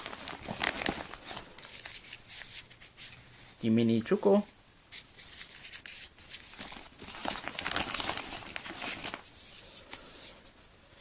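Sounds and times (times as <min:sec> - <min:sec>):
packaging crinkling and rustling: 0:00.0 - 0:03.2, 0:05.2 - 0:10.1.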